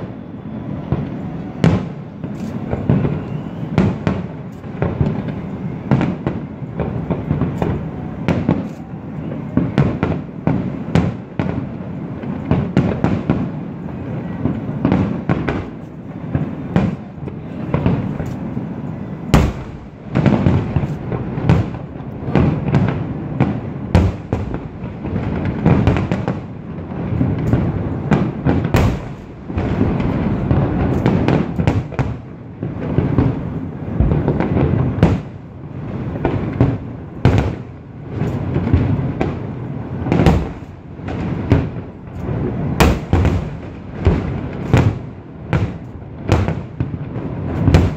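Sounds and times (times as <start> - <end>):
fireworks booms and crackles: 0.0 - 47.9
sharp fireworks reports: 0.0 - 47.9.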